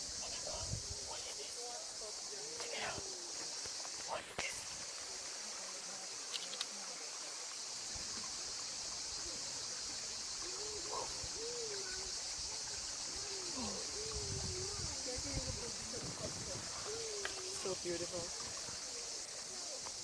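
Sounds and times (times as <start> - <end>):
steady outdoor hiss: 0.0 - 20.0
faint clicks: 6.2 - 6.8.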